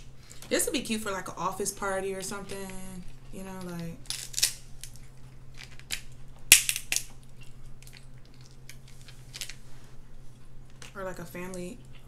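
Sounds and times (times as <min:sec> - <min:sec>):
crab shell cracking: 0:03.6 - 0:09.6.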